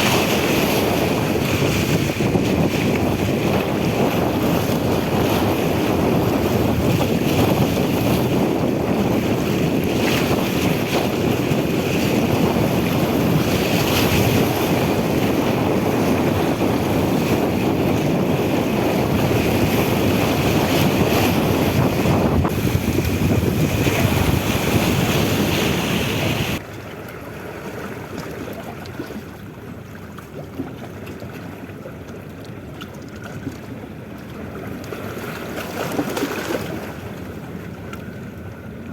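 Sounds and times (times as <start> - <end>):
wind on microphone: 0.0 - 26.6
water washing against boat: 0.0 - 38.9.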